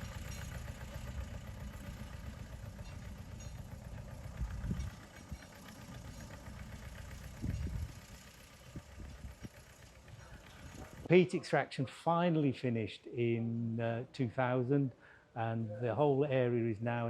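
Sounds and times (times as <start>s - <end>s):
diesel locomotive engine idling: 0.0s - 11.6s
wind buffeting microphone: 4.4s - 5.0s, 7.4s - 8.0s.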